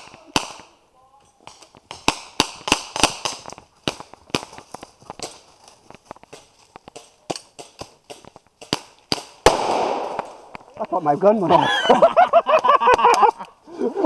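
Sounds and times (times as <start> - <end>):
airsoft gun shots: 9.1 - 10.6.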